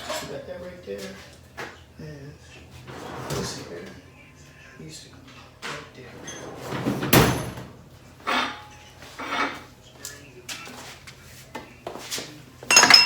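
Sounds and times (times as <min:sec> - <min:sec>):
metal hand tools clanking: 0:12.6 - 0:13.0.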